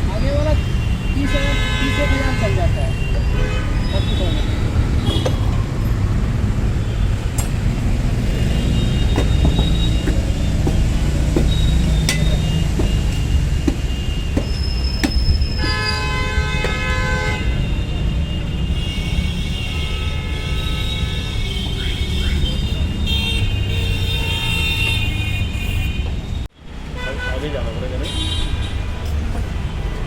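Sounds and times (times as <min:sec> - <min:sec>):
street traffic rumble: 0:00.0 - 0:30.0
vehicle horn: 0:00.7 - 0:05.5, 0:15.0 - 0:26.1.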